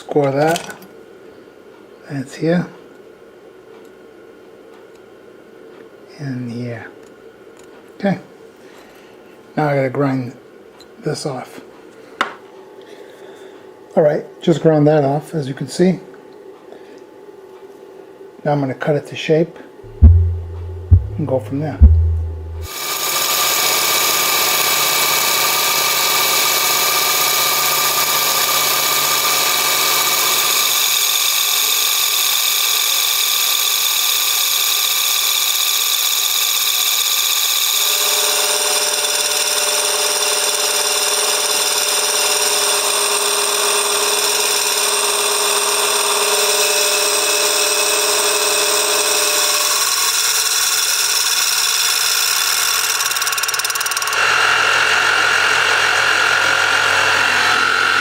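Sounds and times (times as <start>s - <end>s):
power tool cutting steel: 24.3s - 58.0s.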